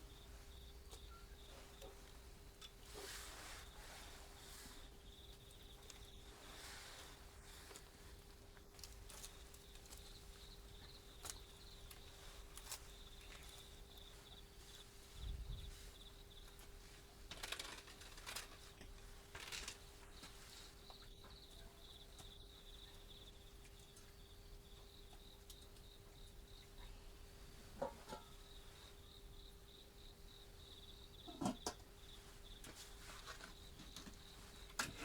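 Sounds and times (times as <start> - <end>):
faint high pulsing chirp: 0.0 - 2.1
faint steady hum: 0.0 - 35.0.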